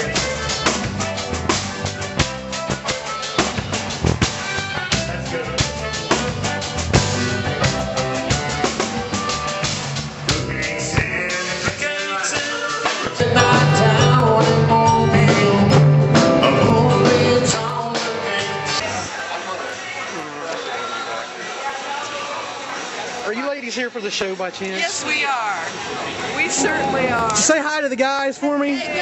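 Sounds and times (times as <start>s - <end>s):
band with drums and guitar: 0.0s - 19.1s.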